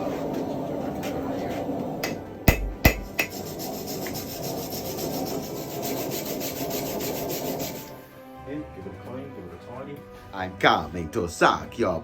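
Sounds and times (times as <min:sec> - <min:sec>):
sharp knocks: 0:02.0 - 0:03.3
hand tool scraping iron: 0:02.0 - 0:08.0.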